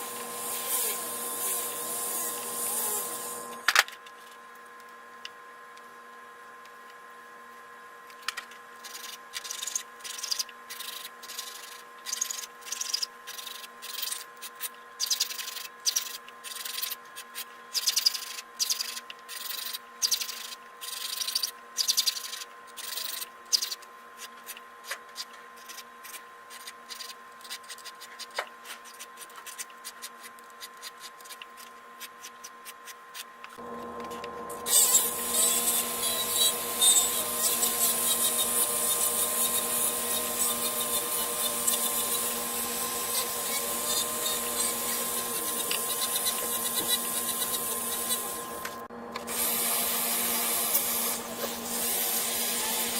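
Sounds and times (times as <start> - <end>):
steady electrical hum: 0.0 - 52.9
file rasping on metal: 34.7 - 48.4.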